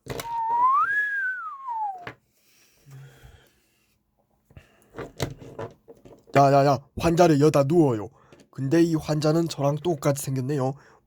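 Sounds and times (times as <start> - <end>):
gliding whistle-like tone: 0.2 - 2.1.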